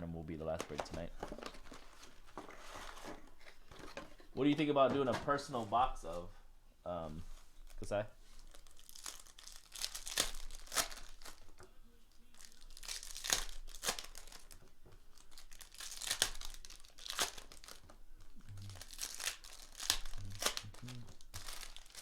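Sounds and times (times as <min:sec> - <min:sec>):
foil wrappers crinkling and tearing: 0:07.6 - 0:22.0.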